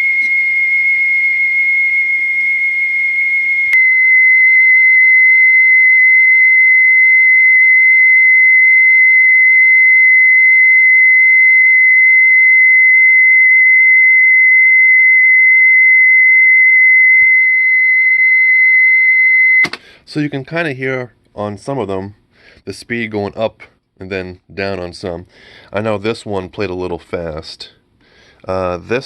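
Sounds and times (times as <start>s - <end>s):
high pure test tone: 0.0s - 19.7s.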